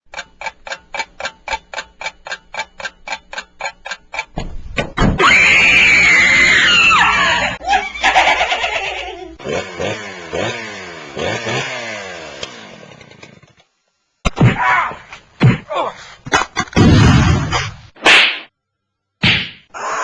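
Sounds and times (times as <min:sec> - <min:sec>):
falling wail: 0:05.2 - 0:09.2, 0:19.7 - 0:20.0.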